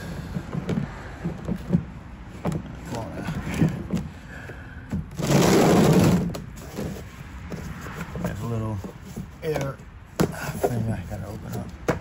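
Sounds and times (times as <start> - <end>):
loud scraping rush: 5.1 - 9.4.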